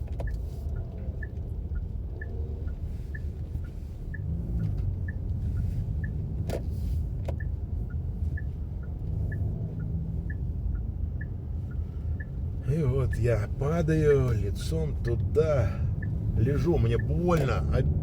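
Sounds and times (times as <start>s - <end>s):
car road and engine rumble: 0.0s - 18.0s
turn signal ticking: 0.0s - 18.0s.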